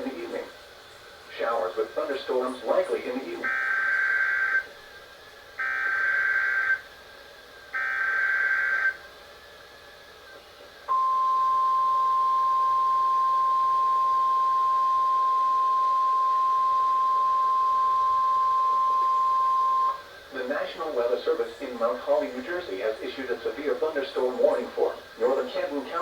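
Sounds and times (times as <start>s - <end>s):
steady warning alarm tone: 3.4s - 4.7s, 5.6s - 6.9s, 7.7s - 9.0s, 10.9s - 20.1s.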